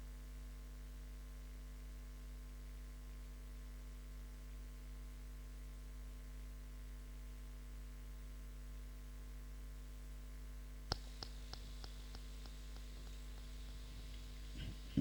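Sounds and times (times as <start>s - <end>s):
electrical mains hum: 10.7s - 15.0s.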